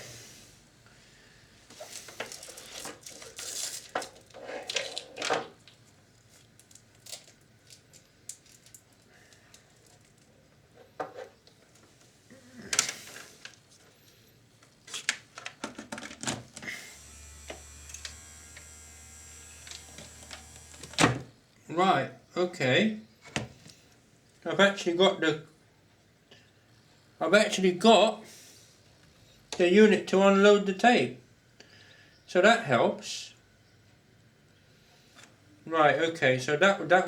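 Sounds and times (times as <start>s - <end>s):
small electric motor humming: 16.7s - 21.2s
tape mechanism clicks and knocks: 19.6s - 21.2s.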